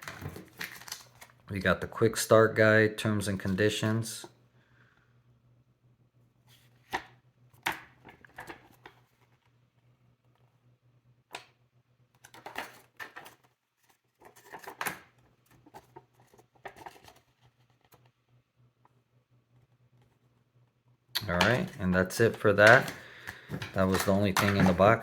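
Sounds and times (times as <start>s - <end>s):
paper rustling: 0.0s - 1.4s, 12.3s - 18.1s, 21.4s - 25.0s.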